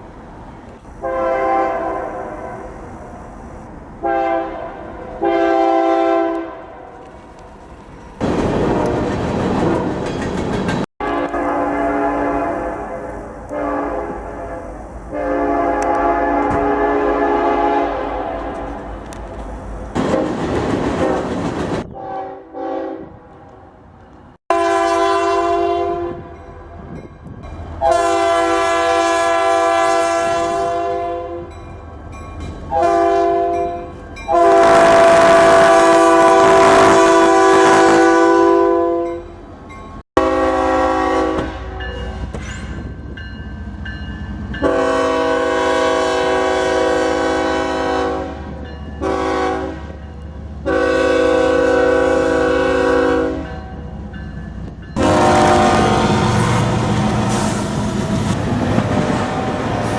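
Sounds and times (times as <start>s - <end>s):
locomotive air horn blasts: 1.0s - 3.2s, 4.0s - 7.0s, 8.5s - 9.1s, 11.0s - 19.2s, 21.0s - 21.3s, 21.9s - 23.5s, 24.5s - 26.4s, 27.8s - 31.6s, 32.7s - 39.4s, 40.2s - 42.4s, 44.6s - 50.0s, 50.6s - 53.8s, 55.0s - 59.9s.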